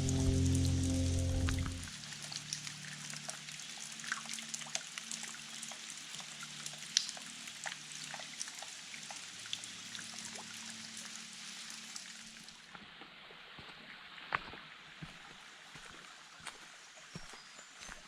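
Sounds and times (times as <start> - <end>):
water trickling and pouring: 0.0 - 12.8
water drips and splashes: 0.0 - 18.0.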